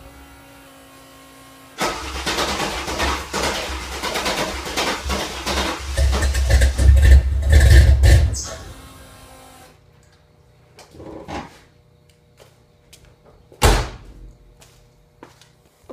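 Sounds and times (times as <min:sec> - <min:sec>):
vehicle engine turning over: 0:01.8 - 0:08.5.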